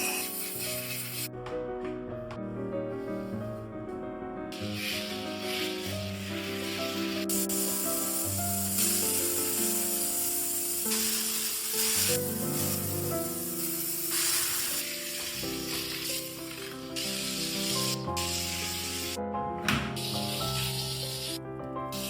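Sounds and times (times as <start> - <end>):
steam cleaner hissing: 0.0 - 1.3, 4.6 - 22.0
background music: 0.0 - 22.0.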